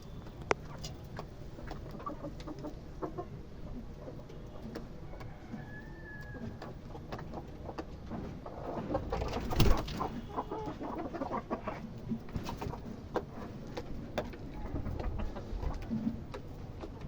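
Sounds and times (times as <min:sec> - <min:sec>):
chickens clucking: 0:00.0 - 0:17.0.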